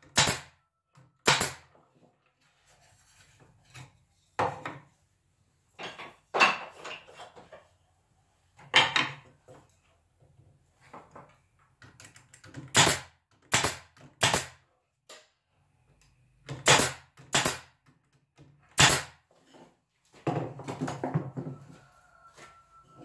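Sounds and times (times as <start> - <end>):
clatter of small knocks: 20.2 - 21.6.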